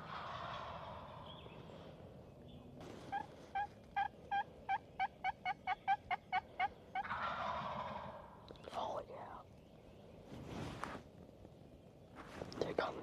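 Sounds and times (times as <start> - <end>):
turkey gobble: 0.0 - 1.4, 3.0 - 8.4
turkey yelps: 3.1 - 8.2.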